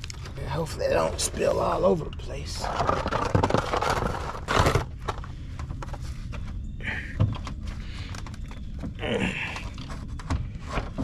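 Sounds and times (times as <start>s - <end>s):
scraping rustles: 2.4s - 11.0s.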